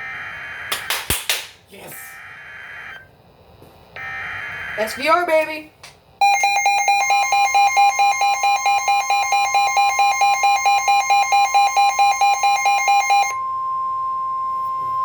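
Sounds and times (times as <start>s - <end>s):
steady warning alarm tone: 0.0s - 0.9s, 1.9s - 3.1s, 4.0s - 5.2s, 6.2s - 15.0s
rapid alarm beeping: 6.2s - 15.0s.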